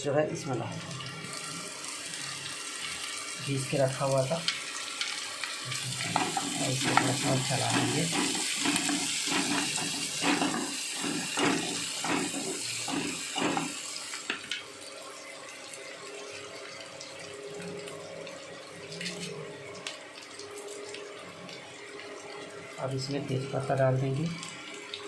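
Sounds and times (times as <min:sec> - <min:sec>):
onions sizzling in a pan: 0:00.9 - 0:14.8
spatula scraping pan: 0:05.9 - 0:13.9.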